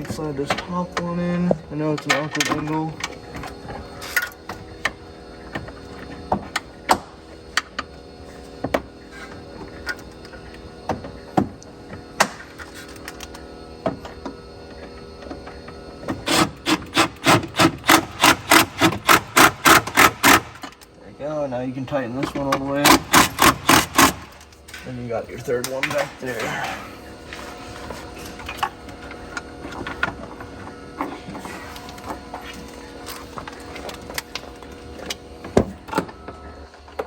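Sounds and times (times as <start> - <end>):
ratchet clicking: 22.9 - 24.4.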